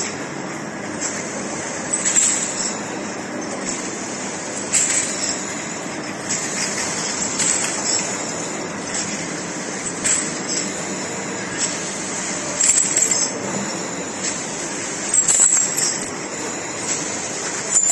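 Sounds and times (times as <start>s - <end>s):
washing machine running: 0.0s - 17.9s
glass vials clinking: 1.9s - 3.7s, 4.6s - 17.9s.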